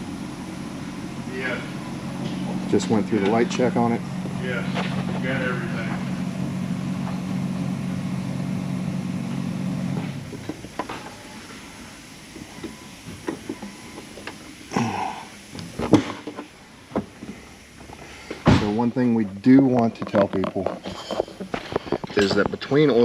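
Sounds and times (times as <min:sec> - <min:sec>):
car engine idling: 0:00.0 - 0:23.0
loud thump: 0:18.4 - 0:18.8.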